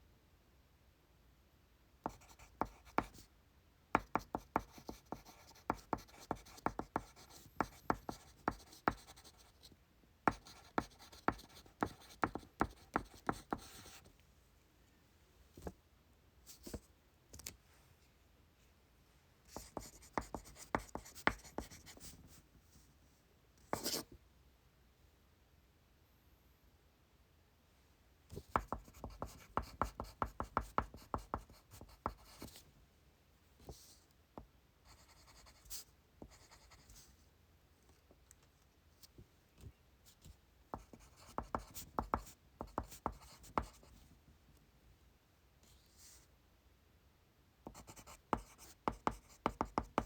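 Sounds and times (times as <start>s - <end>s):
pen scratching on paper: 2.0s - 3.2s, 4.0s - 9.6s, 10.3s - 14.0s, 19.5s - 22.2s, 23.8s - 24.0s, 28.4s - 32.6s, 34.9s - 36.9s, 40.8s - 43.9s, 47.6s - 50.0s.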